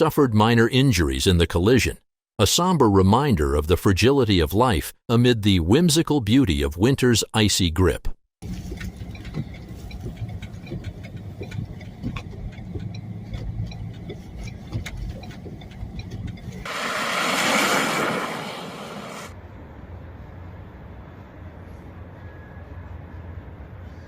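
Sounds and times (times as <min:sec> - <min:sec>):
engine rumbling: 0:08.4 - 0:24.0
loud rushing hiss: 0:16.7 - 0:19.4.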